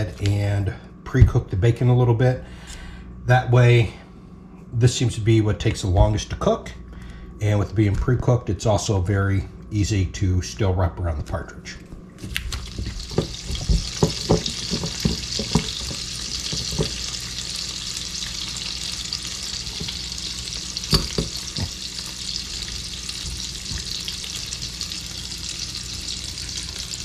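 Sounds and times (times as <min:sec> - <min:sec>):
bacon sizzling in a pan: 0:12.3 - 0:27.0
sharp knocks: 0:13.1 - 0:17.0, 0:20.9 - 0:21.7.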